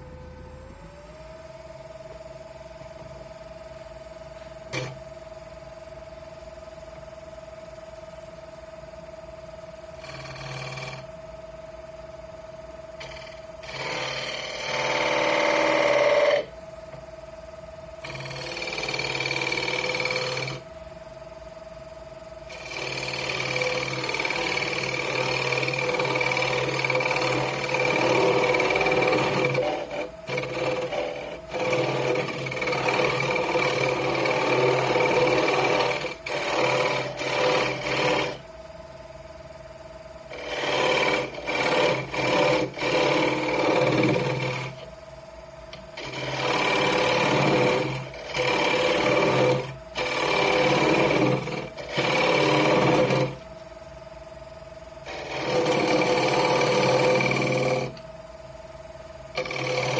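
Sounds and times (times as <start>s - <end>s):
tool cutting spinning wood: 4.3s - 5.3s, 9.8s - 11.3s, 12.8s - 17.0s, 18.0s - 20.7s, 22.4s - 38.5s, 40.2s - 53.5s, 55.0s - 58.1s, 59.2s - 59.9s
lathe motor humming: 9.8s - 11.3s, 12.8s - 17.0s, 18.0s - 21.1s, 22.4s - 38.6s, 40.2s - 53.6s, 55.0s - 58.1s, 59.2s - 59.9s.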